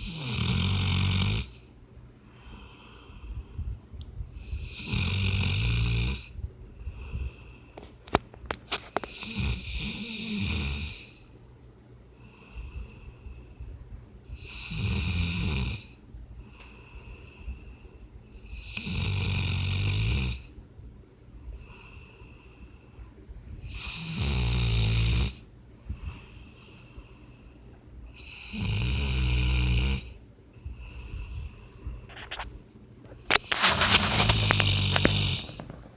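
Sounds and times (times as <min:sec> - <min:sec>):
puppy snoring: 0:00.0 - 0:01.7, 0:04.4 - 0:06.4, 0:07.1 - 0:11.2, 0:14.3 - 0:17.8, 0:18.4 - 0:20.6, 0:23.5 - 0:27.2, 0:28.1 - 0:32.5, 0:33.1 - 0:35.9.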